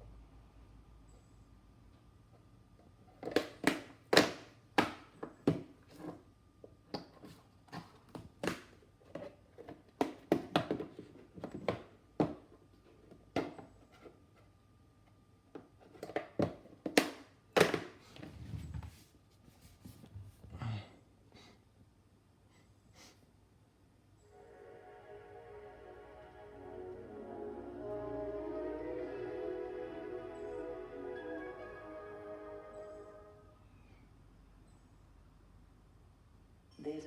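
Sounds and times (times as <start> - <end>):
faint steady high tone: 24.2 - 34.8.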